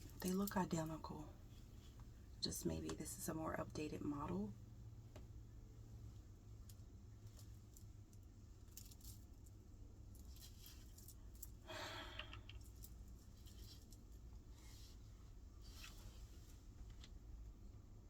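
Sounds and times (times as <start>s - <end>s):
small parts clicking and rattling: 6.6s - 14.2s.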